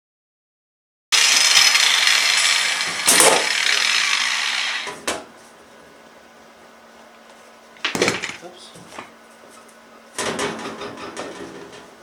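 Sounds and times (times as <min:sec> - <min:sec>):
power tool hissing: 0:01.2 - 0:05.0.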